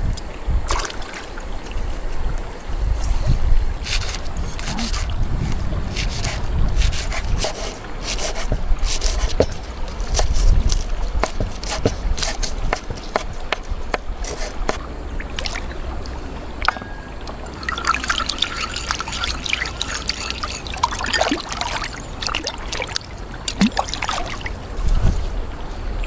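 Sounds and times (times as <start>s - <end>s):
water trickling and splashing: 0.0s - 26.0s.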